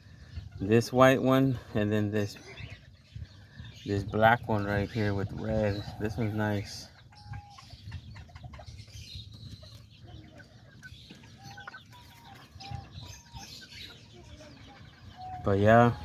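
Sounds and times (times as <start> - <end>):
chickens clucking softly: 0.1 - 16.0.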